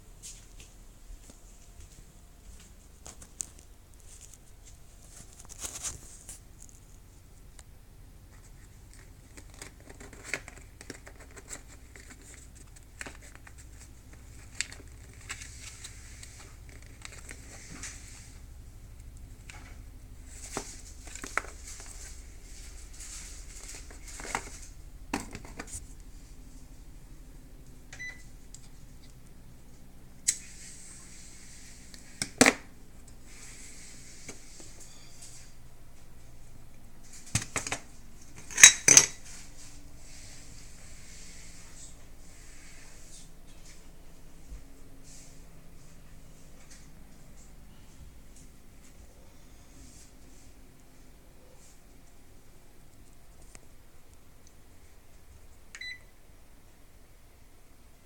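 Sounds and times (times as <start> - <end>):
exhaust fan humming: 0.0 - 58.0
crinkling and clicks of handling: 2.6 - 7.7, 8.3 - 18.2, 19.0 - 26.1, 36.0 - 39.7, 52.8 - 54.6.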